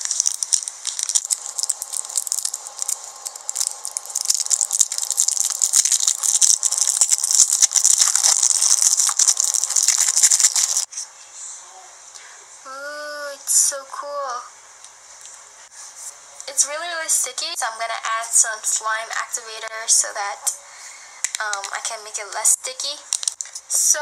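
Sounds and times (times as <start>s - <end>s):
sticky slime crackling: 0.0s - 10.9s, 21.2s - 23.8s.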